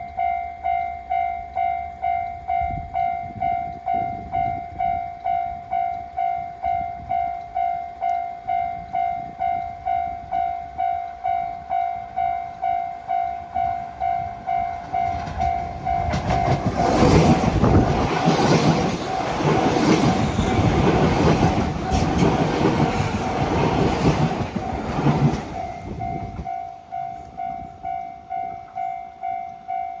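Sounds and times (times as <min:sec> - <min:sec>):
electric train passing: 0:00.0 - 0:30.0
level-crossing alarm bell dinging: 0:00.0 - 0:30.0
wheels clacking over rails: 0:14.8 - 0:26.5.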